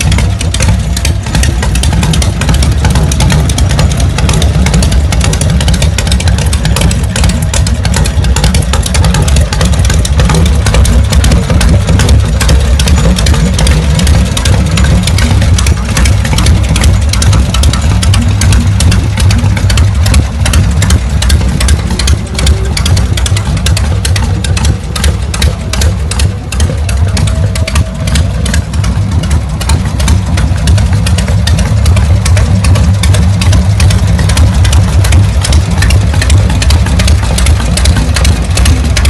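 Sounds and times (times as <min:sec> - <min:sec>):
motorcycle engine idling: 0:00.0 - 0:39.0.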